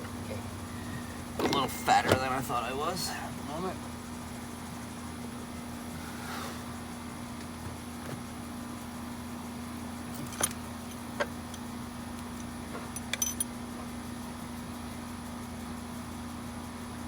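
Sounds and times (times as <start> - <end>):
steady low hum: 0.0 - 17.0
metallic clicks from tools: 10.3 - 13.6.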